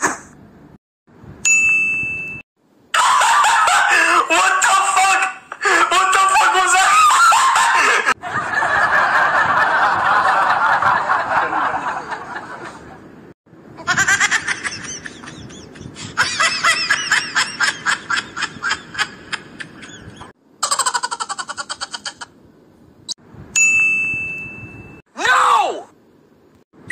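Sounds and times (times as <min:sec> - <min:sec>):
person laughing: 0:03.0 - 0:04.5, 0:06.8 - 0:08.2, 0:13.8 - 0:22.3.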